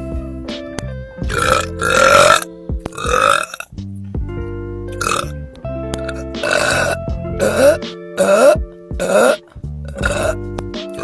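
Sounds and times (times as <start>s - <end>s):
music with held notes: 0.0s - 11.0s
woman burping: 1.3s - 3.6s, 6.4s - 10.4s.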